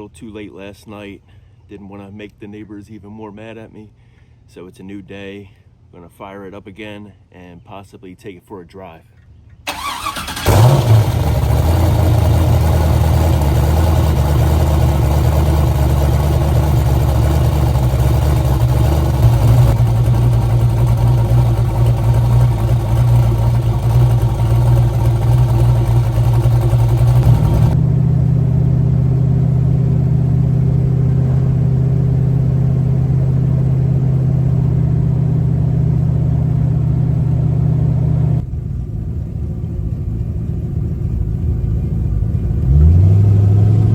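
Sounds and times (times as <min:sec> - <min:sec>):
engine choppy idle: 0:09.7 - 0:29.2.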